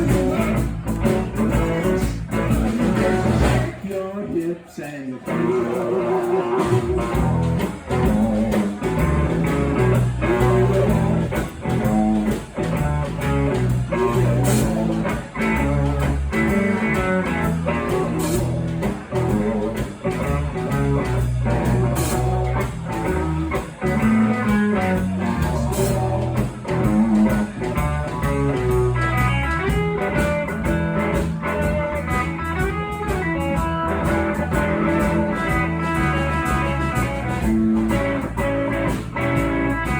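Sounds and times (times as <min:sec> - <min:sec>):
lead guitar: 0:00.0 - 0:39.9
live blues band playing: 0:00.0 - 0:39.9.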